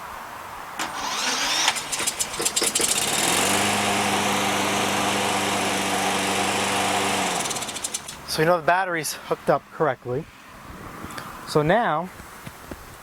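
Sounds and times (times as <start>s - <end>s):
electric starter cranking: 0.8s - 8.3s
lawn mower engine running: 0.8s - 8.4s.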